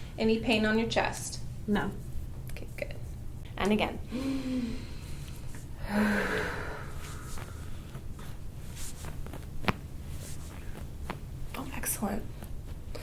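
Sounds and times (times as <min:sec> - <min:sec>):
person sighing hard: 0:04.1 - 0:05.0, 0:05.8 - 0:07.0.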